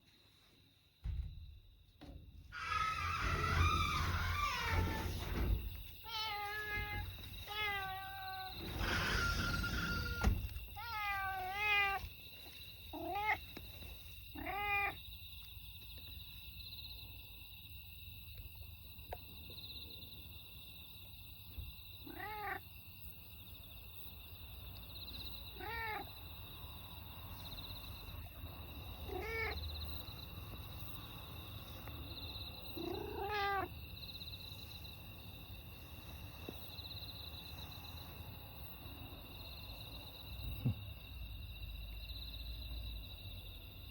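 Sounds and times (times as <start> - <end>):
cat meowing: 6.0 - 12.1, 13.0 - 13.4, 14.3 - 15.0, 22.1 - 22.6, 25.5 - 26.1, 29.0 - 29.6, 32.8 - 33.7.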